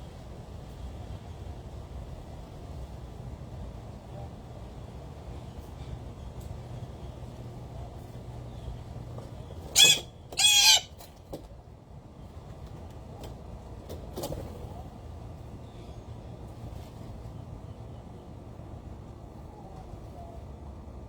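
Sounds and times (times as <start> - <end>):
bird calls with wavering pitch: 9.8 - 10.9.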